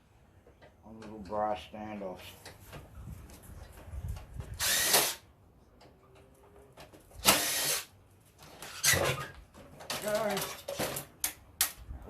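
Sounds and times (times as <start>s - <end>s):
cordless drill bursts: 4.6s - 5.2s, 7.2s - 7.9s.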